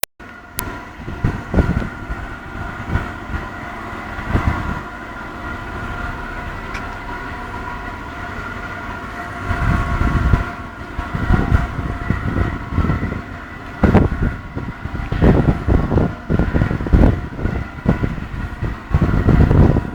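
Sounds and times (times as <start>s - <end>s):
low rumbling: 0.2s - 19.9s
machine whine: 0.2s - 19.9s.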